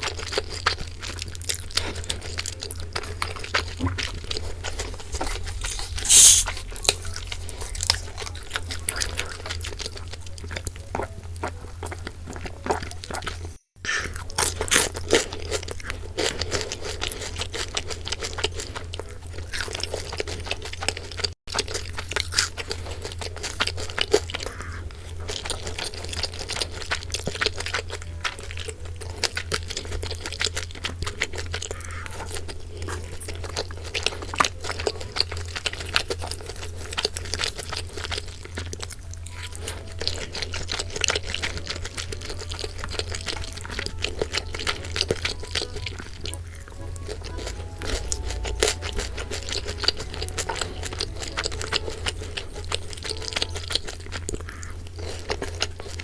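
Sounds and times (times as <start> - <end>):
person crunching and chewing: 0.0 - 56.0.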